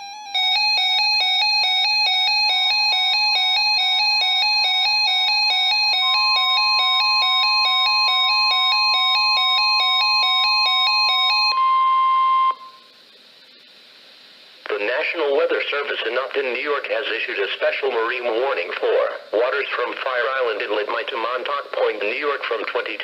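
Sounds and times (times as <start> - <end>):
two-pitch electronic alert beeps: 5.0 - 12.9
steady alert tone: 5.2 - 12.8.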